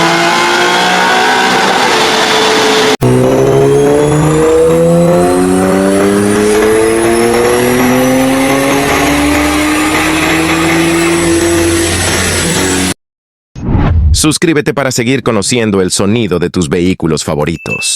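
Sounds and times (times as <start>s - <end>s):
sports car engine accelerating: 0.0s - 12.9s.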